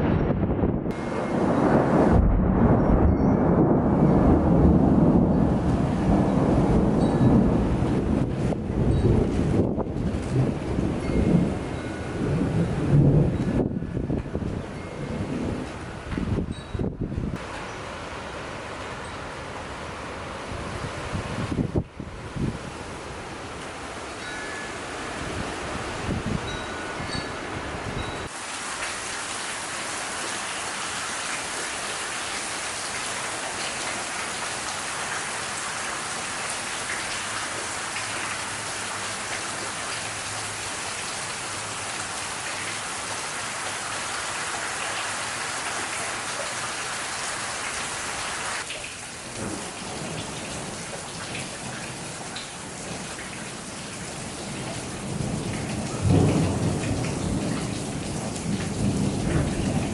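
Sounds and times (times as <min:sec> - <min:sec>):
low rumble of thunder: 0:00.0 - 0:17.4, 0:49.3 - 0:50.8, 0:54.3 - 0:59.9
heavy rain pouring: 0:00.0 - 0:59.9.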